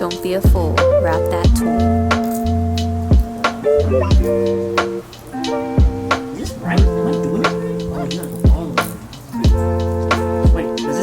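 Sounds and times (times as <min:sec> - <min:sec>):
held chords over bass line: 0:00.0 - 0:11.0
drum hits: 0:00.1 - 0:10.8.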